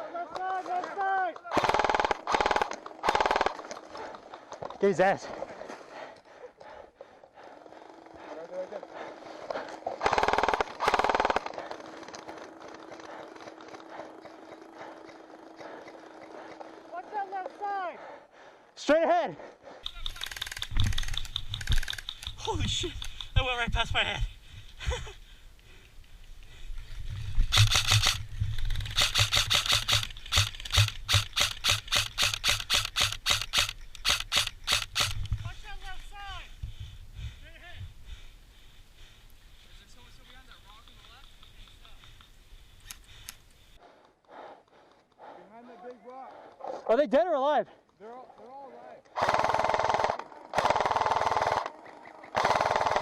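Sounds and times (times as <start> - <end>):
electric gun firing full-auto bursts: 1.5 - 3.7, 10.0 - 11.7, 27.5 - 28.2, 28.8 - 35.2, 49.2 - 53.0.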